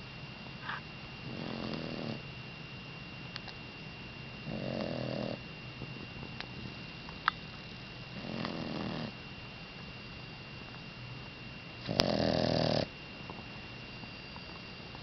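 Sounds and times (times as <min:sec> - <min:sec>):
dog snoring: 0:00.6 - 0:02.2, 0:04.4 - 0:05.4, 0:08.1 - 0:09.2, 0:11.8 - 0:12.9.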